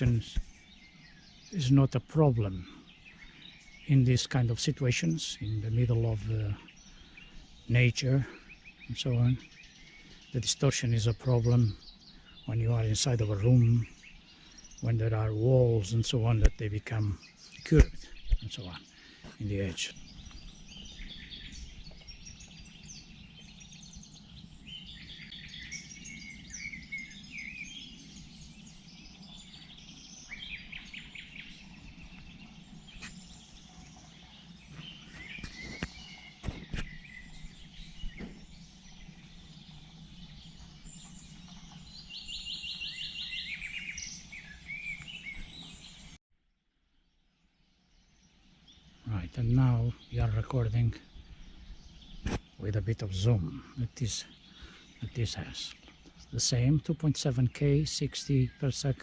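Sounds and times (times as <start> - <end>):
fast buzzy bird trill: 0.0 - 46.2
songbirds singing and chirping: 0.0 - 46.2, 46.8 - 59.0.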